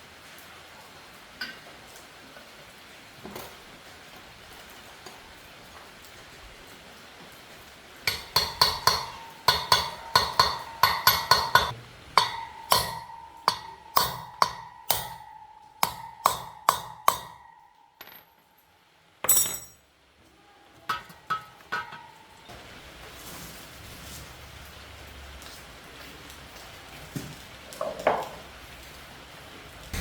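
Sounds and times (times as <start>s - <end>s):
hammer striking ringing metal: 8.1s - 17.7s.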